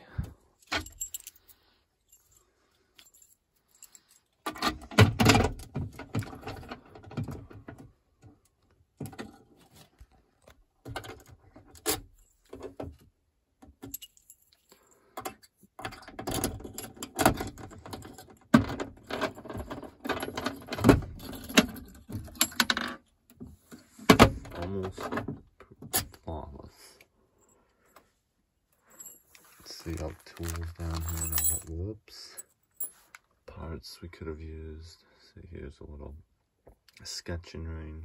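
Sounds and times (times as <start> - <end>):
keys jangling in a lock: 0.6 - 7.5, 11.0 - 12.6, 13.7 - 22.8, 28.9 - 31.7.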